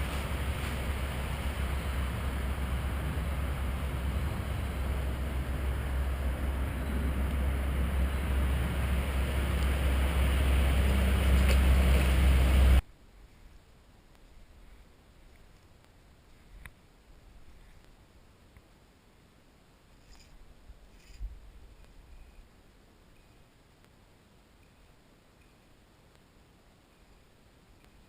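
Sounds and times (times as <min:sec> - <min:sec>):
low rumble: 0:00.0 - 0:12.8.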